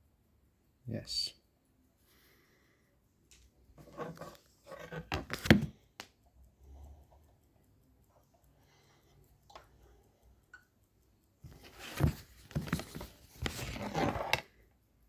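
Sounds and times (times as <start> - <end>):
knocks and rustling of parts: 11.5 - 14.4.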